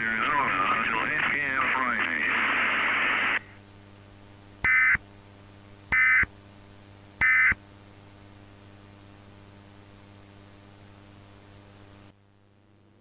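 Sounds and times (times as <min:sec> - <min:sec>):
static hiss: 0:00.0 - 0:03.9
faint steady hum: 0:00.0 - 0:13.0.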